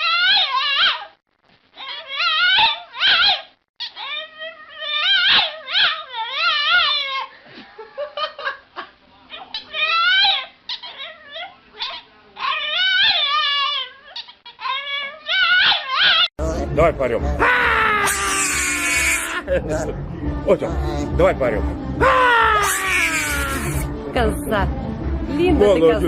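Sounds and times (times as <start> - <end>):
dog howling: 0.0 - 1.1, 1.8 - 3.4, 4.0 - 7.3, 12.4 - 16.3, 17.4 - 19.4, 22.0 - 23.9.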